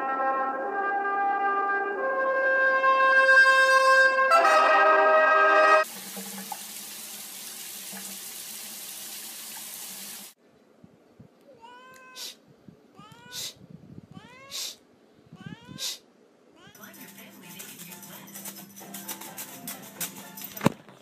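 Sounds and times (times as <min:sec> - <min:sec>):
cat meowing: 0:11.5 - 0:14.8, 0:15.4 - 0:16.0, 0:16.6 - 0:16.8.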